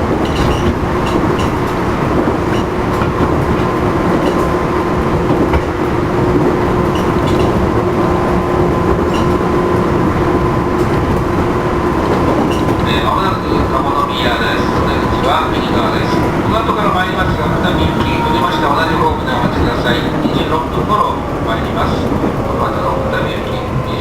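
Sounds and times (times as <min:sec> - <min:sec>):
train wheels rumbling: 0:00.0 - 0:24.0
faint rail-joint clicks: 0:00.2 - 0:01.8, 0:02.5 - 0:04.6, 0:06.8 - 0:07.6, 0:09.0 - 0:09.9
traction motors humming: 0:00.6 - 0:24.0.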